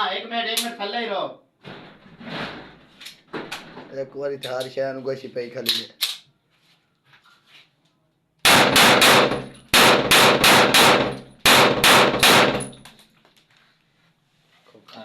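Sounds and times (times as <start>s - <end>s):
gunshot bursts with ringing tail: 8.5s - 12.7s.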